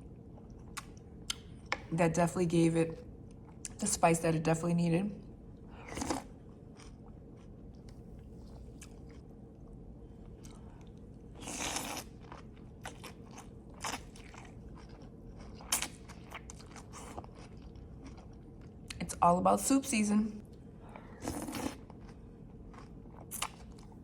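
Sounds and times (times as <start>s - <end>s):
person chewing crunchy food: 5.8s - 19.0s, 20.9s - 24.0s.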